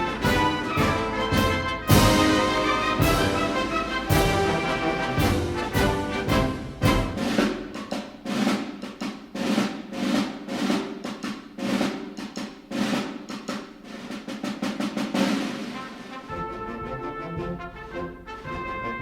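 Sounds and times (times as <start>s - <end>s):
orchestral music: 0.0s - 7.8s, 15.4s - 19.0s
percussion hits: 0.0s - 16.5s
rolling snare drum: 0.0s - 19.0s.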